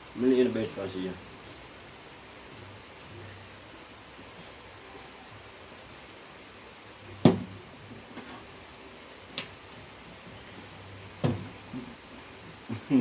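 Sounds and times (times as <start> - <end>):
sharp knocks: 7.2 - 7.6, 11.2 - 11.9.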